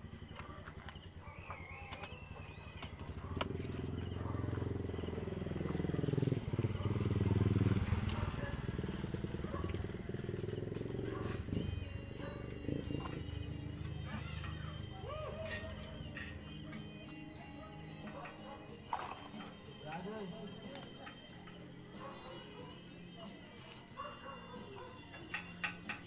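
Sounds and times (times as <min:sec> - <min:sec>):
motorcycle engine running: 0:02.2 - 0:17.3.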